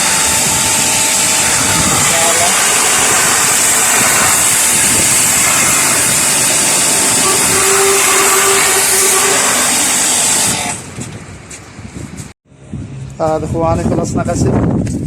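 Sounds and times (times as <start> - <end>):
water jet spraying: 0.0 - 11.0.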